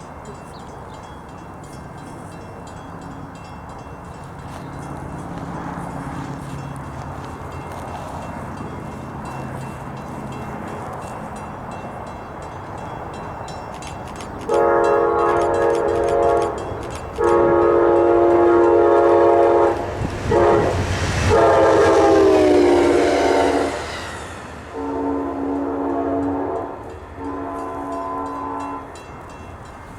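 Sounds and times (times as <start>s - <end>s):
approaching train rushing: 0.0s - 29.9s
locomotive air horn blasts: 14.5s - 23.9s, 24.7s - 28.9s.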